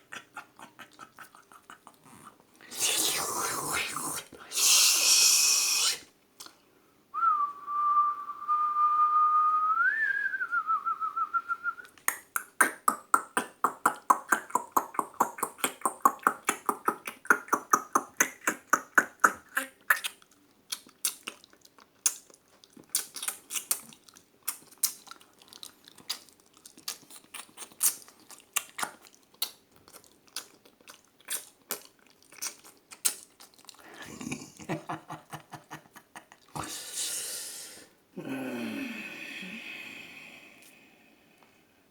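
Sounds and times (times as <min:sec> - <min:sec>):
clicking mouth sounds: 0:00.1 - 0:06.6, 0:11.8 - 0:33.8
person whistling bird imitation: 0:07.2 - 0:11.9.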